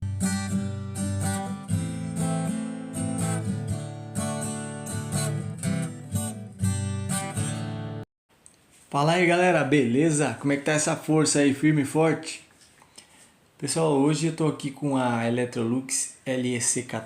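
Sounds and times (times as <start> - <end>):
acoustic guitar strumming: 0.0 - 8.0.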